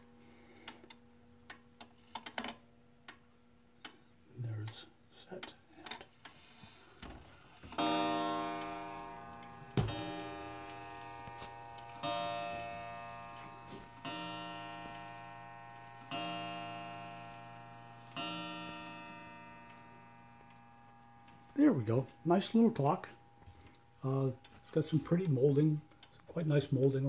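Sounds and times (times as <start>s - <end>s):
clock striking a gong: 7.7s - 25.8s
clock ticking: 7.7s - 27.0s.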